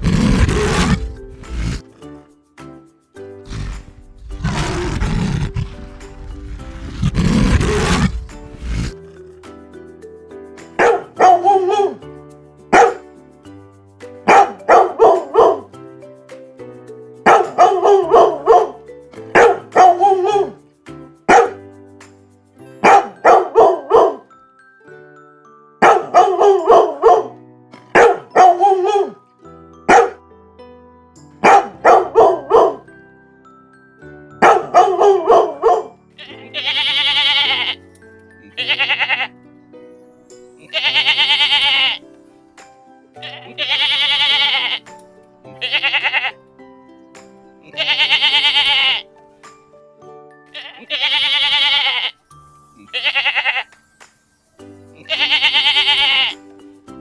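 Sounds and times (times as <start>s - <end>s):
rough roars: 0.0s - 2.0s, 3.5s - 9.0s
background music: 0.0s - 57.0s
dog barking: 10.8s - 12.0s, 12.8s - 13.0s, 14.3s - 15.6s, 19.4s - 20.6s, 21.3s - 21.6s, 22.8s - 24.2s, 25.8s - 27.3s, 28.0s - 29.2s, 29.9s - 30.2s, 31.4s - 32.8s, 34.4s - 35.9s.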